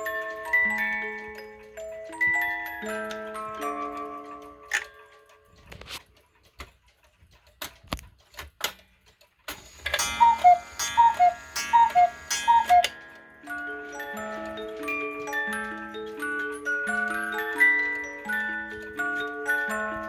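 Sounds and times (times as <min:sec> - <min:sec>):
cuckoo clock call: 0:00.0 - 0:05.8, 0:09.4 - 0:20.0
music box plucking a tune: 0:00.0 - 0:06.0, 0:09.5 - 0:20.0
cuckoo clocks ticking: 0:00.0 - 0:20.0
clock strike: 0:09.5 - 0:13.5.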